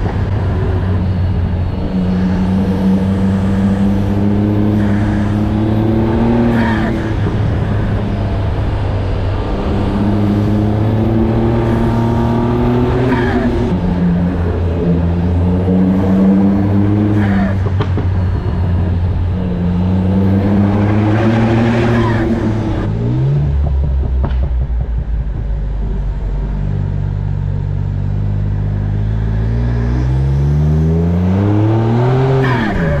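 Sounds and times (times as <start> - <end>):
van engine running: 22.2 - 29.8.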